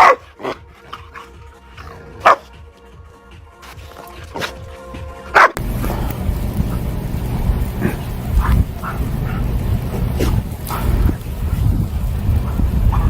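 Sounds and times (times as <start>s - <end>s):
dog barking: 0.0s - 1.2s, 2.1s - 2.6s, 5.3s - 5.6s, 7.8s - 11.6s, 12.4s - 13.0s
soft background music: 0.0s - 5.6s
loud steady noise: 5.6s - 13.0s.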